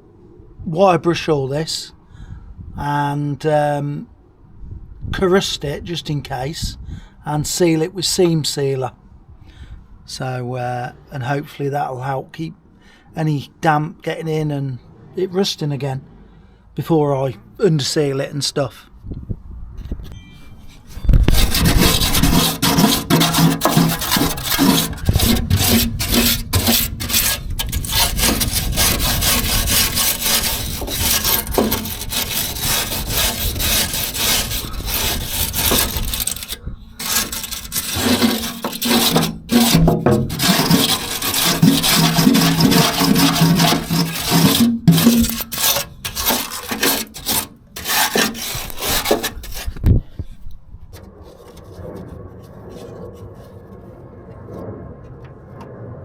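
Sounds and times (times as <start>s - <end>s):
wire brush scraping steel: 20.8s - 49.8s.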